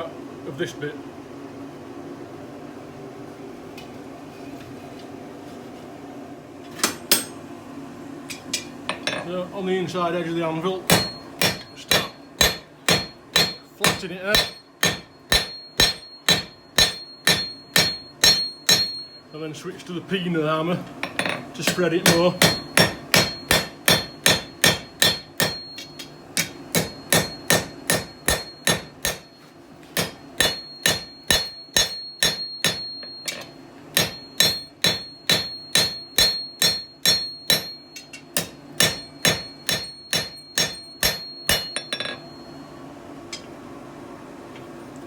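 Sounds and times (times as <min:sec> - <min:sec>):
hammer ringing on anvil: 0:10.9 - 0:19.3, 0:21.0 - 0:42.7.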